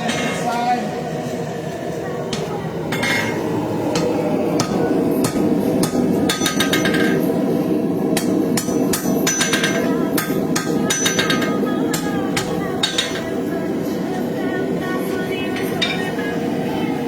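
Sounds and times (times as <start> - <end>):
steady background noise: 0.0 - 17.0
hammer striking steel on anvil: 2.3 - 7.3, 8.2 - 13.5, 15.5 - 16.1.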